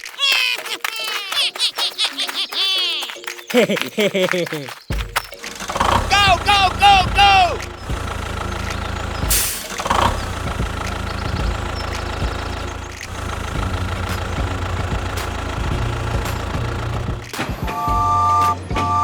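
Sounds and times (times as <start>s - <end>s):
small tractor engine running: 4.9s - 18.0s.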